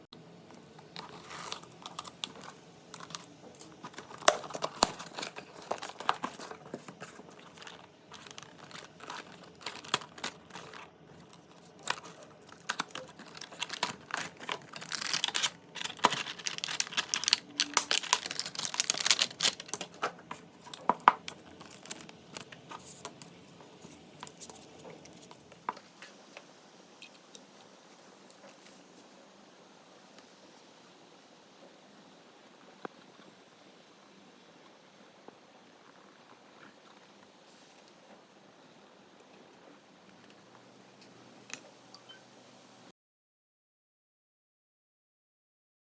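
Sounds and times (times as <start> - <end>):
cardboard and plastic crinkling: 0.6 - 26.4.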